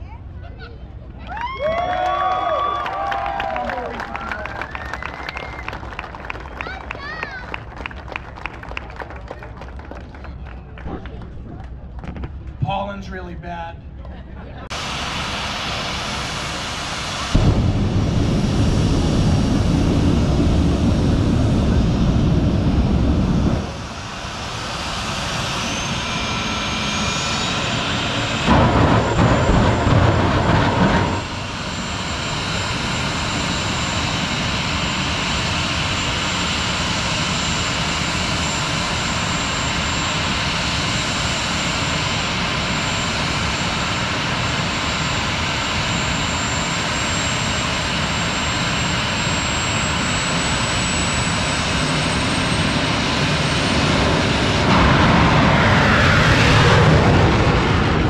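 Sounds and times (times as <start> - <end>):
heavy diesel engine rumble: 14.3 - 58.0
high whine: 14.7 - 58.0.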